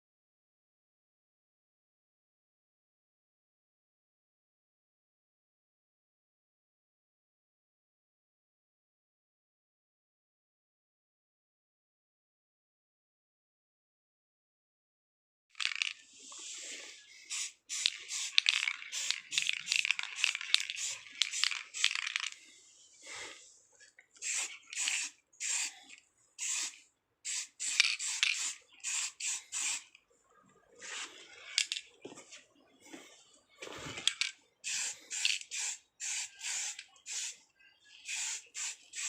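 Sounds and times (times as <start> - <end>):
spray paint can hissing: 15.6 - 22.4, 24.2 - 29.9, 34.0 - 37.4, 38.0 - 39.0.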